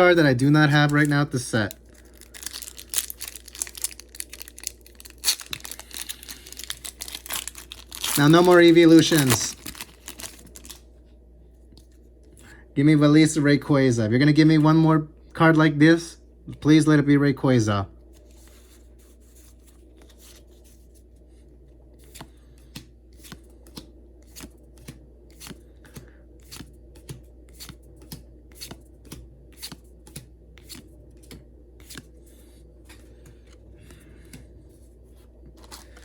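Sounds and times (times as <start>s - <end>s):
faint steady hum: 0.0s - 36.0s
trading cards clicking and snapping: 22.0s - 32.1s.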